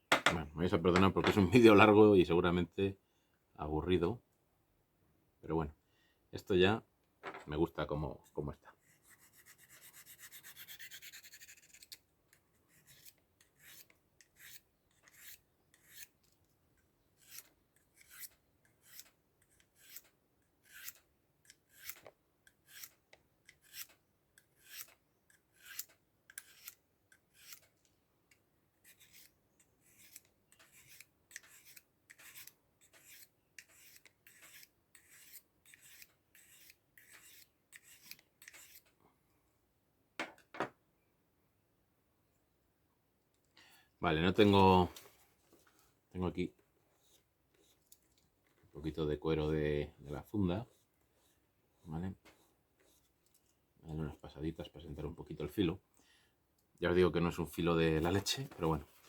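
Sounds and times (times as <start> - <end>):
knife blade scraping on sharpener: 9.0 - 12.0, 12.7 - 16.1, 17.2 - 27.7, 28.8 - 38.9.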